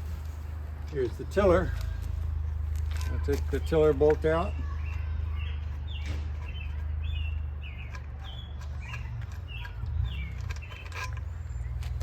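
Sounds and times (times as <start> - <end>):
small birds chirping: 3.1 - 12.0.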